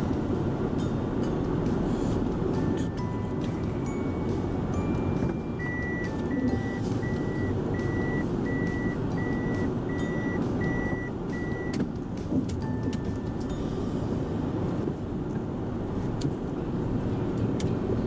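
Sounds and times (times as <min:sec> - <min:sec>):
engine and road rumble: 0:00.0 - 0:18.0
reversing warning beeps: 0:04.9 - 0:11.8.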